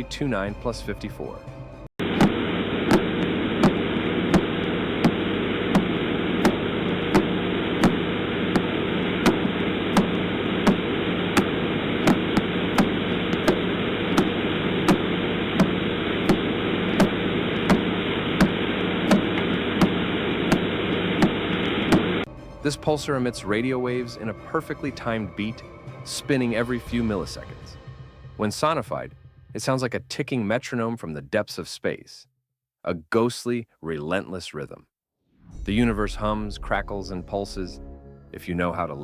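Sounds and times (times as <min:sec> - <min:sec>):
static hiss: 0:02.0 - 0:24.3.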